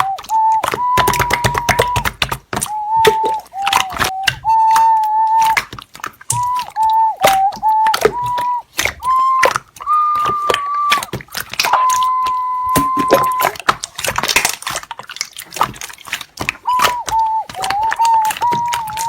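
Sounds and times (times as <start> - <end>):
slime crackling and popping: 0.0 - 19.0
electronic beep tones: 11.7 - 13.5.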